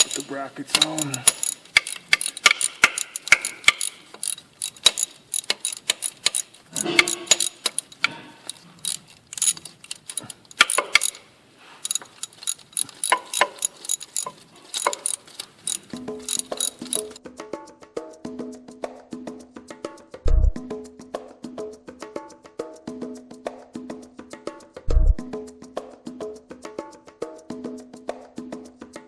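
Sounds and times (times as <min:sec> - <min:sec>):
ratchet wrench clicking: 0:00.0 - 0:17.2.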